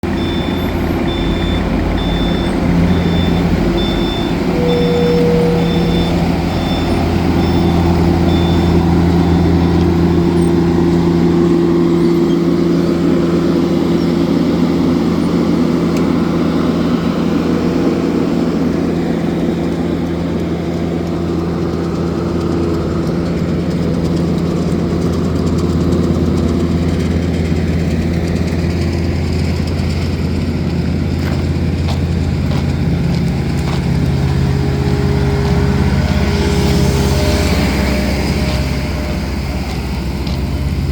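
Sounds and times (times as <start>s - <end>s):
paving machinery engines running: 0.0s - 40.9s
reversing alarm beeping: 0.1s - 14.5s, 33.7s - 40.9s.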